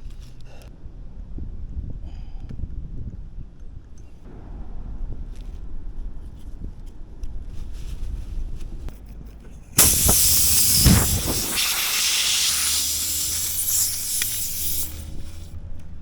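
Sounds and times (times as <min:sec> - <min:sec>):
air hissing out of a tire: 0:09.8 - 0:15.6.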